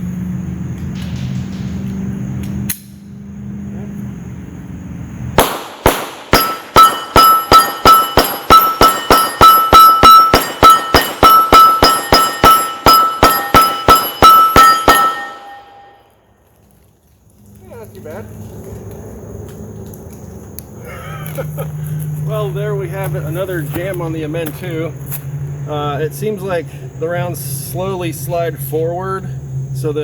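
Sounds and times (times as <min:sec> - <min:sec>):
low steady rumble: 0:00.0 - 0:30.0
pistol shots: 0:05.4 - 0:15.6
ringing tone: 0:06.3 - 0:16.1.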